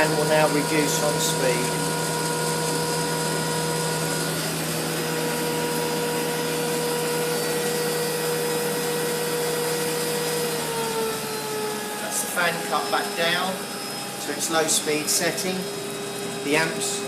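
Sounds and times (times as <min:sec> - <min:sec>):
air heater blower fan whine: 0:00.0 - 0:17.0.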